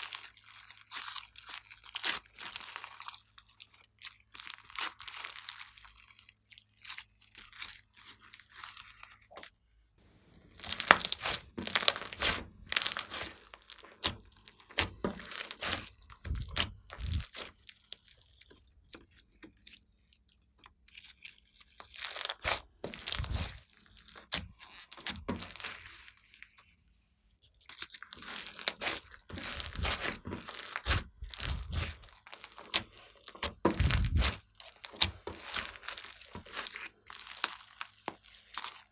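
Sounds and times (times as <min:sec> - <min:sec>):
slime crackling and popping: 0:10.5 - 0:19.1, 0:21.7 - 0:26.3, 0:27.8 - 0:38.9.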